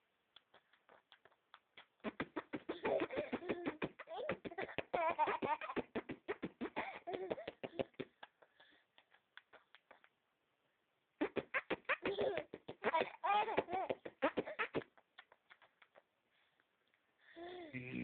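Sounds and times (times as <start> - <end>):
person beatboxing mouth noises: 0.3 - 7.0, 7.6 - 10.2, 11.2 - 16.1, 17.8 - 18.0.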